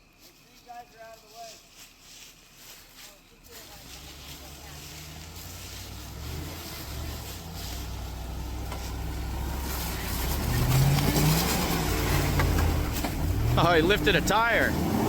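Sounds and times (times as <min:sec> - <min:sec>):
car engine under throttle: 0:03.6 - 0:15.0.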